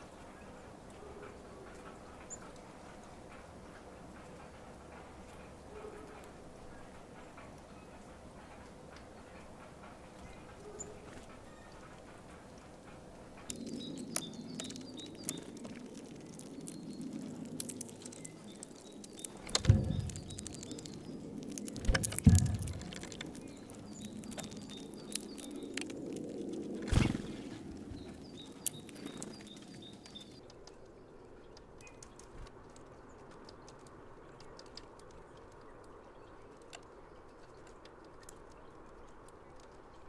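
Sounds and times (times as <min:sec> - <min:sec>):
birds pecking seeds at feeder: 0:00.4 - 0:30.4
heavy thumps: 0:19.3 - 0:24.5.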